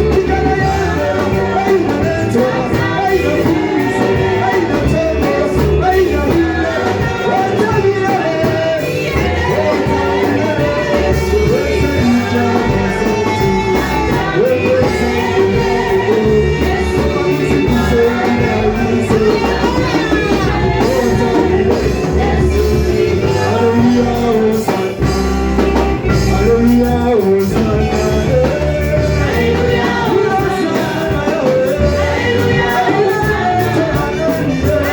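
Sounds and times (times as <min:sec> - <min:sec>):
band playing: 0:00.0 - 0:34.9
voices singing worship music: 0:00.0 - 0:34.9.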